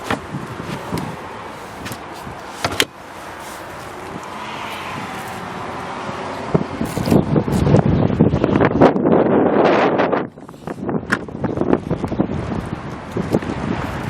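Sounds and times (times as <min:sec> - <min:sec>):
cargo cover clicks and knocks: 0:00.0 - 0:01.1, 0:01.8 - 0:03.0
outdoor background noise: 0:00.0 - 0:14.0.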